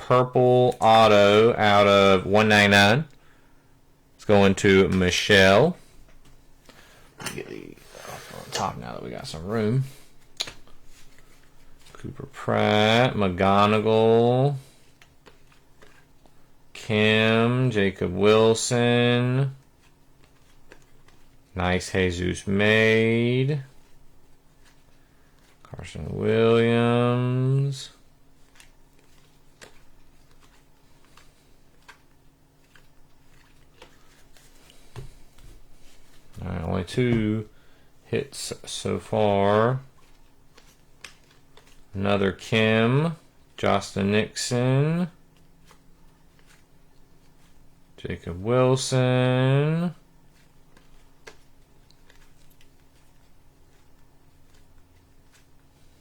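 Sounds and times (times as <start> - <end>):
low steady hum: 0.0 - 56.0
cards clicking and sliding: 28.4 - 37.3, 38.4 - 42.8, 50.3 - 56.0.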